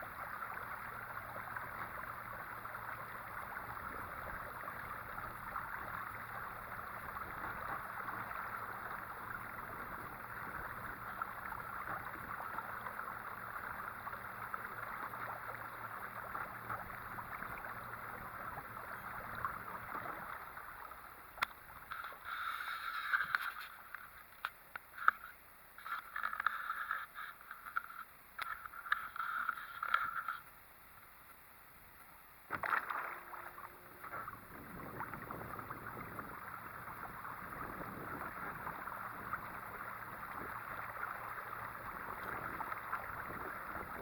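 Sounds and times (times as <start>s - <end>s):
water rushing along hull: 0.0s - 44.0s
splashing or scraping: 21.9s - 30.5s, 32.5s - 35.8s.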